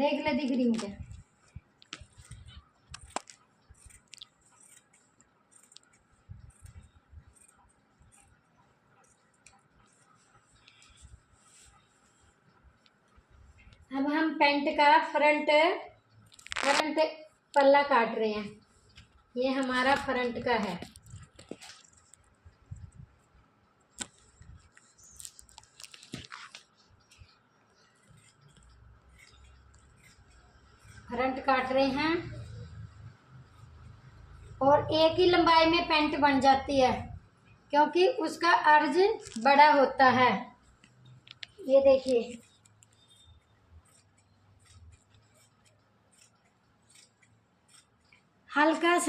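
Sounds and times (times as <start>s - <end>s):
scissors cutting cloth: 0.2s - 13.0s, 16.3s - 23.3s, 23.9s - 37.2s, 38.0s - 49.0s
fabric handling: 0.4s - 14.0s, 18.7s - 31.7s
scissors snipping cloth: 1.8s - 10.0s, 27.9s - 33.0s, 40.6s - 49.0s
scissors clicking: 1.9s - 8.3s.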